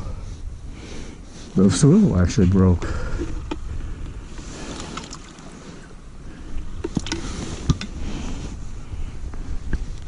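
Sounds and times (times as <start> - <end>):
wind rumbling on microphone: 0.0 - 10.0.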